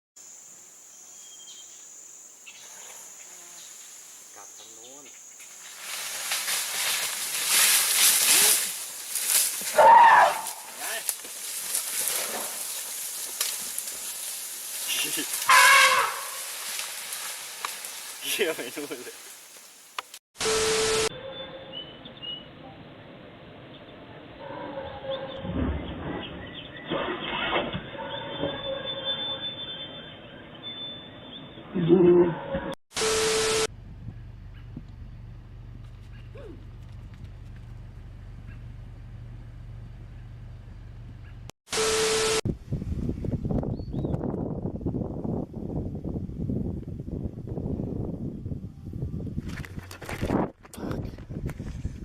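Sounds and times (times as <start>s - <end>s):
insects chirring: 0.2s - 20.2s.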